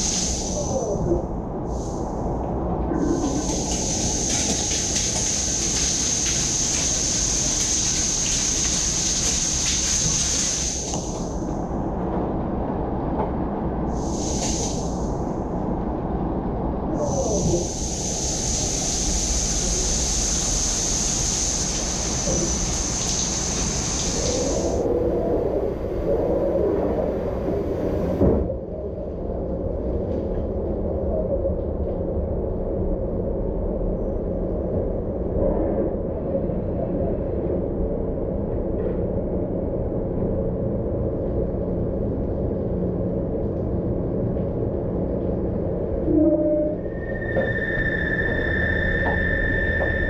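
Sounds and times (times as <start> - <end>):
high hiss: 0.0 - 0.8, 3.0 - 11.4, 13.9 - 15.3, 17.0 - 24.8
machine rumble and hum: 0.0 - 50.0.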